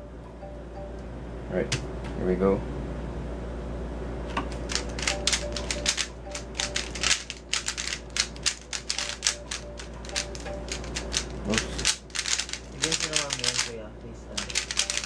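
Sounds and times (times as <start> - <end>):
puzzle cube turning clatter: 4.5 - 13.7, 14.4 - 15.0.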